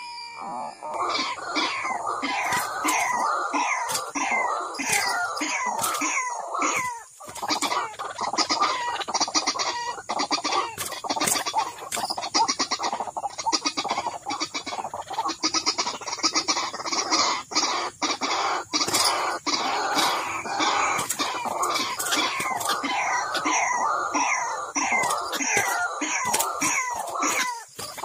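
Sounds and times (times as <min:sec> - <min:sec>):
bird harsh chattering call: 0:00.0 - 0:28.0.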